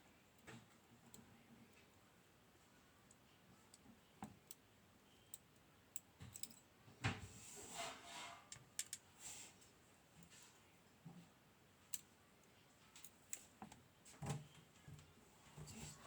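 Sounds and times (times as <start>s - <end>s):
small metal parts clicking: 6.0s - 6.6s, 8.8s - 9.0s.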